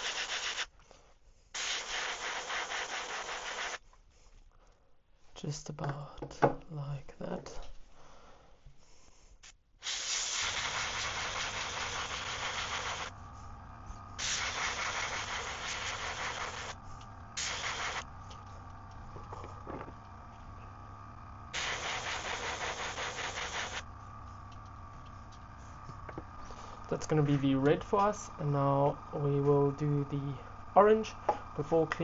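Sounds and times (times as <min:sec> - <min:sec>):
airbrush spraying hiss: 0:00.0 - 0:00.7, 0:01.5 - 0:03.8, 0:09.4 - 0:24.6
steady low hum: 0:00.1 - 0:32.0.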